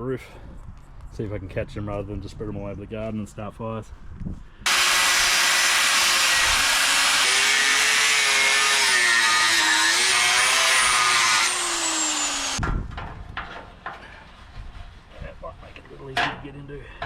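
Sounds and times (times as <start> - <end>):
angle grinder cutting steel: 4.7 - 12.6.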